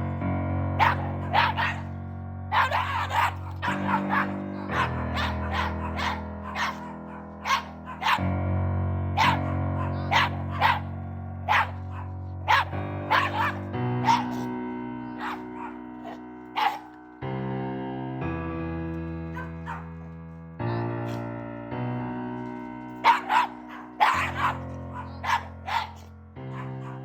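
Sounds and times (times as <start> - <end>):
background music: 0.0 - 27.0
dog barking: 0.8 - 8.4, 9.1 - 17.0, 19.2 - 20.1, 21.0 - 21.3, 22.9 - 27.0.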